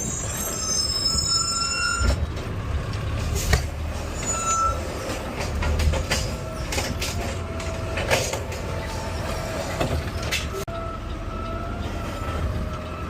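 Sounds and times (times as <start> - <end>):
truck engine rumble: 0.0 - 13.0
rattles and knocks: 4.9 - 10.6.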